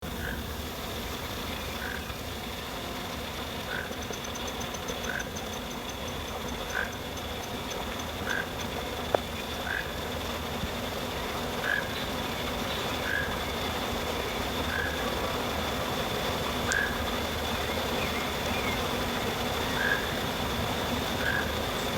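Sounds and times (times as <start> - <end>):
toucan croaking calls: 0.1 - 0.5, 1.7 - 2.2, 3.6 - 10.2, 11.5 - 15.2, 16.6 - 21.9
high insect drone: 0.1 - 21.9
rapid high ticking trill: 1.5 - 21.9.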